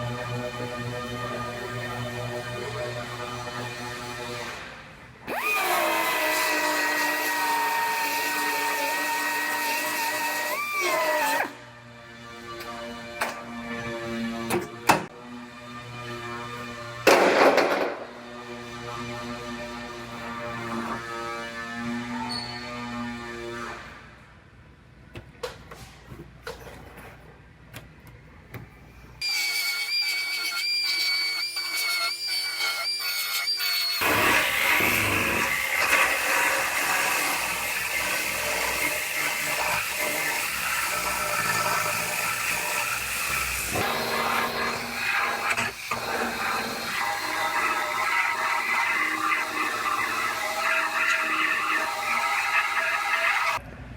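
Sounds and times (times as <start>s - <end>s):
power tool whining: 0.0s - 11.6s, 29.2s - 53.6s
taps and knocks of body-shop work: 14.5s - 15.1s.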